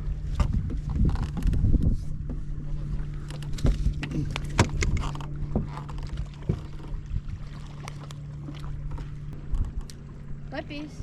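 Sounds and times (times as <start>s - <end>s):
boat motor humming: 0.0s - 11.0s.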